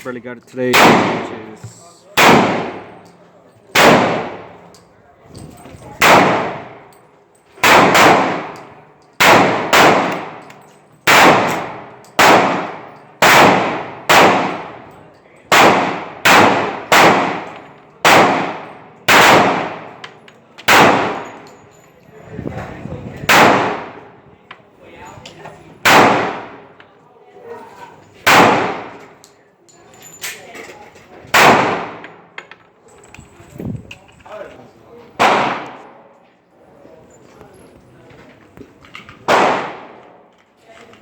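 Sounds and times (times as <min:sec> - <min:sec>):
pistol shots: 0:00.7 - 0:01.6, 0:02.2 - 0:03.1, 0:03.7 - 0:04.7, 0:06.0 - 0:06.9, 0:07.6 - 0:14.8, 0:15.5 - 0:20.0, 0:20.6 - 0:21.4, 0:23.2 - 0:24.1, 0:25.8 - 0:26.7, 0:28.2 - 0:29.2, 0:31.3 - 0:32.3, 0:35.2 - 0:36.0, 0:39.2 - 0:40.2.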